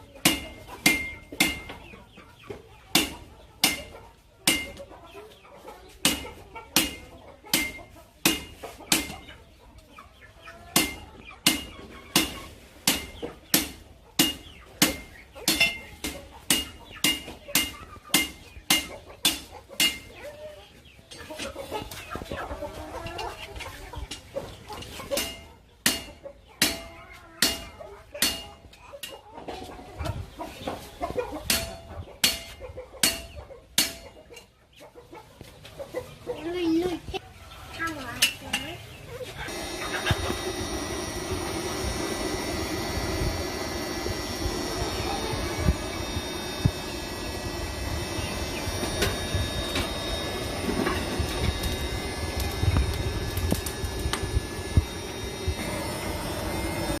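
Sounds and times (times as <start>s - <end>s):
chickens clucking: 0.0s - 57.0s
hammer striking steel on anvil: 0.2s - 1.8s, 3.0s - 3.9s, 4.5s - 4.8s, 6.0s - 6.2s, 6.8s - 9.1s, 10.8s - 20.1s, 25.2s - 28.6s, 31.5s - 34.1s.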